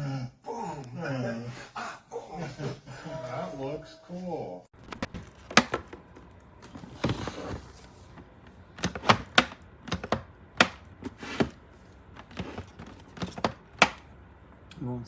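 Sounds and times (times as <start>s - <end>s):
plastic fridge door clicks and knocks: 4.8s - 14.1s.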